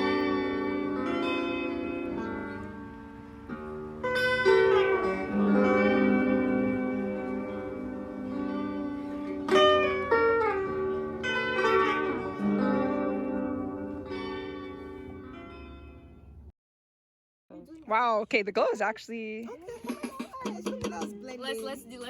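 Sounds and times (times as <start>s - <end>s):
instrumental background music: 0.0s - 16.2s.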